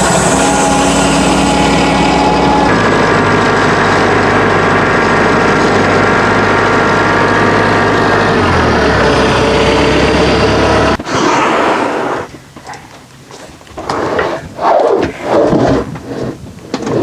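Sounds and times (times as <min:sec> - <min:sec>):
sawmill gas engine running: 0:00.0 - 0:12.2.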